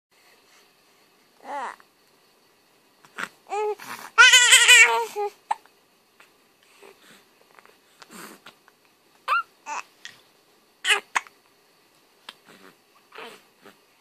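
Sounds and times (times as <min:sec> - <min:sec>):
baby yelps: 0:03.6 - 0:05.2, 0:09.3 - 0:09.9, 0:10.8 - 0:11.3
baby squealing: 0:09.3 - 0:09.8.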